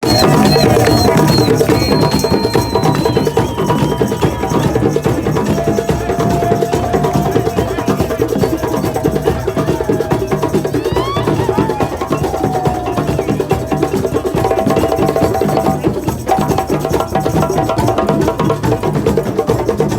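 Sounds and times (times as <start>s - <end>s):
thin held tones: 0.0s - 8.0s
drum beaten in fast rhythm: 0.0s - 19.9s.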